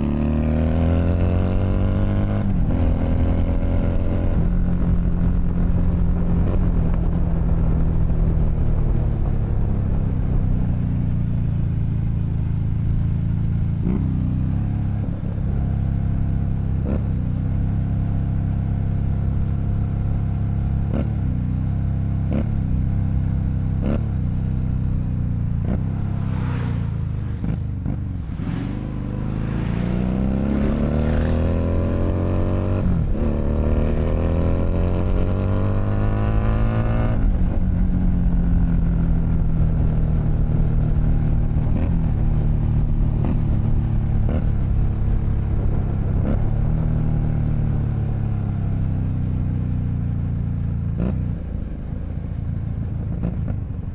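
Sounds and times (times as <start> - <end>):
motorcycle engine running: 0.0 - 53.9.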